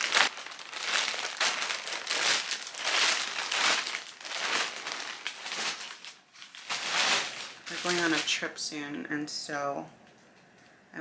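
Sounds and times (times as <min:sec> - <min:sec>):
packaging crinkling and rustling: 0:00.0 - 0:08.7.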